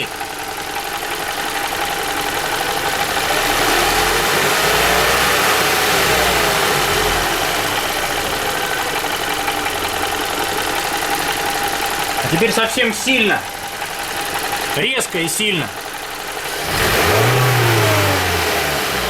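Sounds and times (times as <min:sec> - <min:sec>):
engine knock at idle: 0:00.0 - 0:18.1
petrol engine revving: 0:00.0 - 0:19.0.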